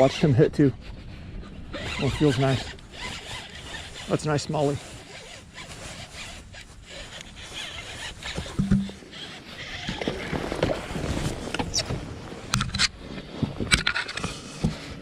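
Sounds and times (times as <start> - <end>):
knocks and clunks on a boat: 8.3 - 9.0
low hum: 8.4 - 9.1.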